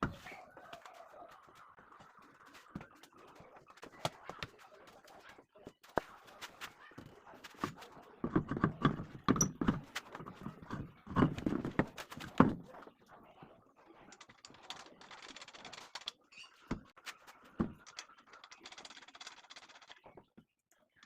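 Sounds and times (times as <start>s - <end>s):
tools knocking and clattering: 8.2s - 12.6s.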